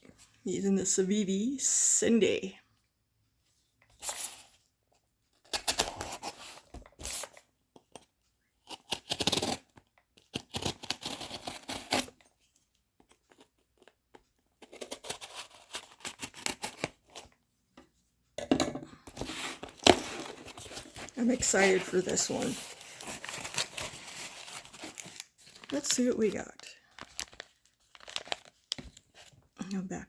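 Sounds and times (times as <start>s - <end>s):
knife cutting packing tape: 8.6s - 12.1s, 14.6s - 17.2s.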